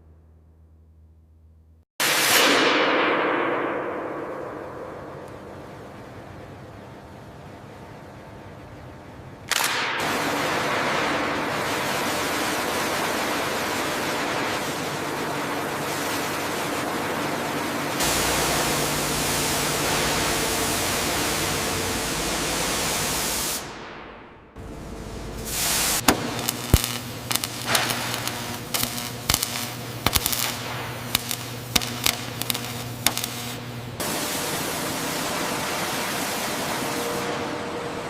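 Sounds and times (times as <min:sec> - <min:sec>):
loud steady rushing hiss: 0:09.5 - 0:23.9, 0:24.6 - 0:38.0
low hum: 0:10.3 - 0:34.1.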